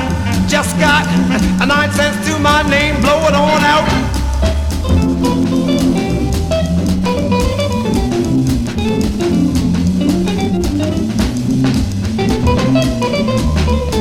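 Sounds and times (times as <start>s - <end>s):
drums: 0.0s - 14.0s
jazz guitar: 0.0s - 14.0s
walking bass line: 0.0s - 14.0s.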